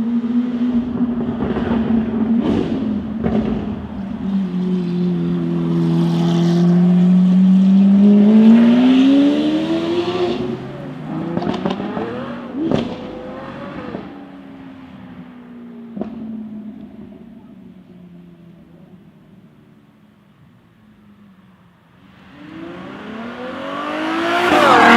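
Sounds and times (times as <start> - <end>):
car engine revving: 0.6 - 14.2, 22.2 - 24.9.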